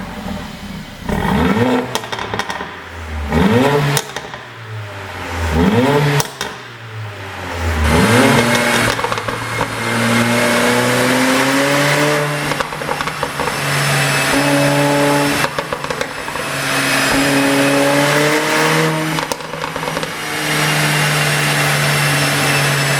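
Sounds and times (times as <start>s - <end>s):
car engine revving: 0.0s - 22.9s
exhaust crackles and pops: 0.2s - 4.7s, 5.6s - 6.8s, 7.6s - 20.2s.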